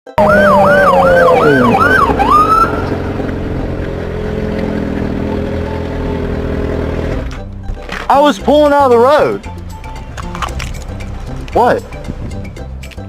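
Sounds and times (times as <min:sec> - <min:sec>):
police siren yelping: 0:00.1 - 0:03.3
road noise: 0:00.1 - 0:13.0.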